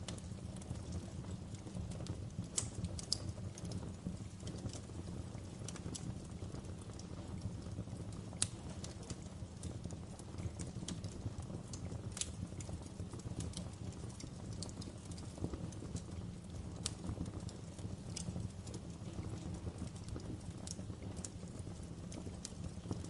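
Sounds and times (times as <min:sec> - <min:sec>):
logs burning with low rumble: 0:00.0 - 0:23.0
wood fire crackling: 0:00.0 - 0:23.0.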